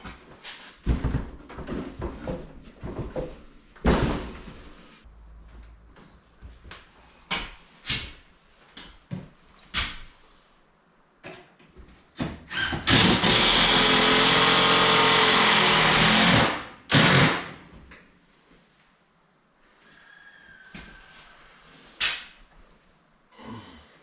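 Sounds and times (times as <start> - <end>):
power tool motor running: 12.9 - 17.4.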